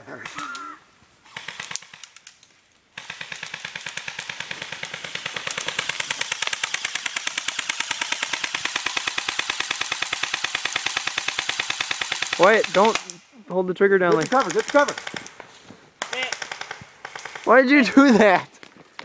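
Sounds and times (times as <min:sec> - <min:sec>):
airsoft gun firing full auto: 0:01.3 - 0:02.2, 0:03.0 - 0:13.1, 0:14.1 - 0:15.4, 0:16.0 - 0:17.5.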